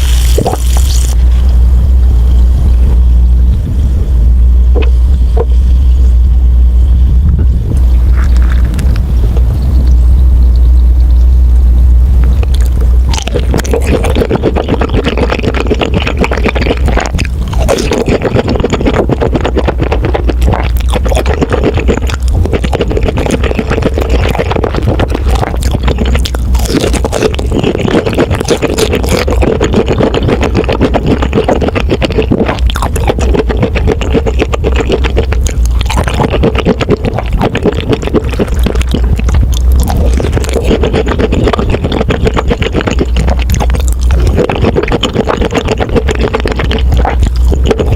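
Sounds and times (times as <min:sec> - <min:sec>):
chewing crispy food: 0:00.0 - 0:01.3, 0:07.9 - 0:09.0, 0:12.2 - 0:47.9.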